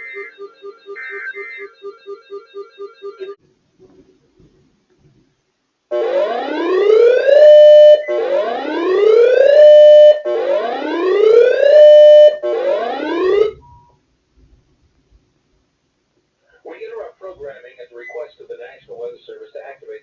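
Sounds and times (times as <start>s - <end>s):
electronic siren sweeping up: 5.9s - 13.8s.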